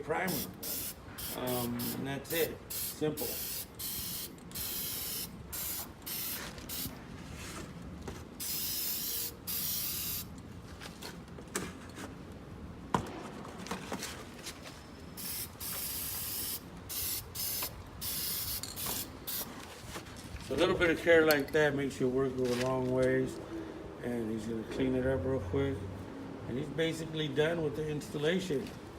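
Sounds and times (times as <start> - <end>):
aerosol spray can spraying: 0.3 - 6.9, 8.4 - 10.3, 15.2 - 19.5.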